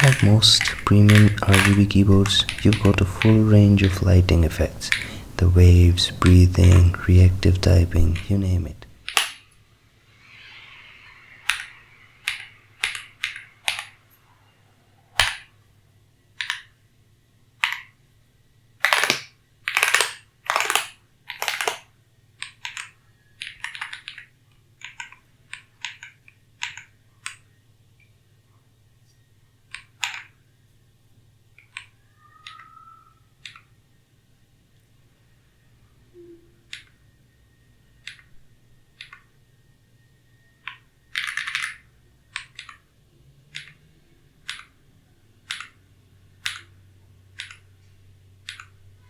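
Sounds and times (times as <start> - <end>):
mechanical keyboard clicks: 0.0 - 9.3, 18.8 - 21.8, 22.4 - 27.4, 40.7 - 42.8, 45.5 - 45.8.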